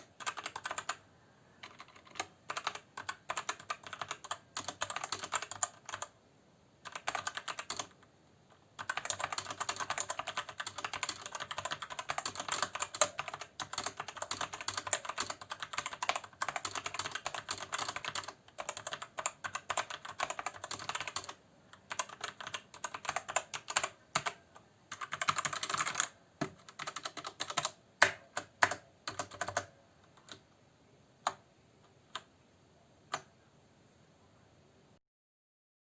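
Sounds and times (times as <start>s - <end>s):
mechanical keyboard typing: 0.0s - 1.0s, 1.6s - 6.2s, 6.8s - 8.0s, 8.8s - 30.4s.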